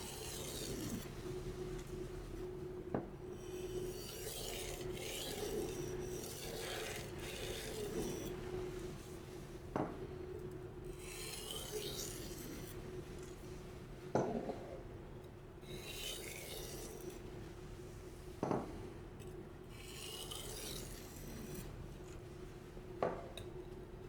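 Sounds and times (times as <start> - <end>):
knife scraping on whetstone: 0.0 - 1.9, 3.4 - 8.4, 11.0 - 12.8, 15.7 - 17.2, 19.7 - 22.2.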